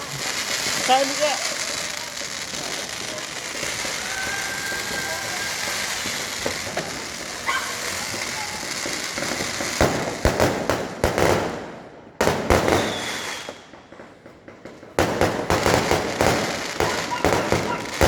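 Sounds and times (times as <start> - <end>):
fireworks bangs: 0.0 - 18.0
fireworks crackling: 0.0 - 18.0.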